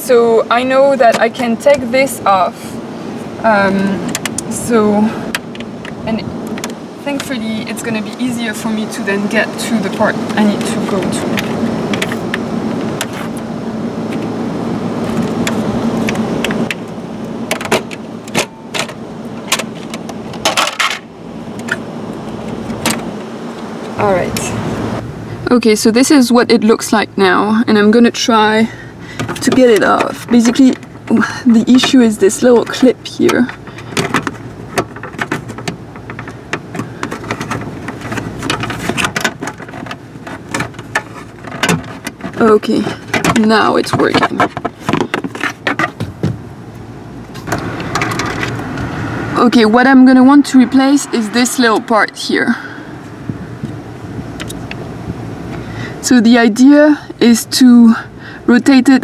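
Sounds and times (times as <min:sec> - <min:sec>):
steady hum: 0:00.0 - 0:59.0
plastic trim clicking and clattering: 0:32.6 - 0:46.4.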